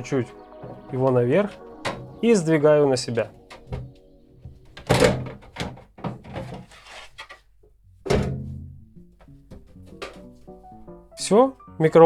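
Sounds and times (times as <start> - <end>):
sheet metal scraping and knocking: 4.7 - 7.4
metal casing clunks: 8.1 - 10.6.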